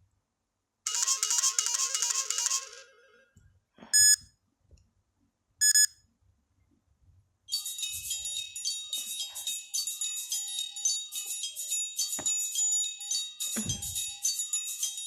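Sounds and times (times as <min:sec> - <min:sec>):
phone ringtone: 0:00.9 - 0:03.3, 0:04.0 - 0:04.2, 0:07.5 - 0:15.0
short electronic beeps: 0:03.9 - 0:04.2, 0:05.6 - 0:05.9.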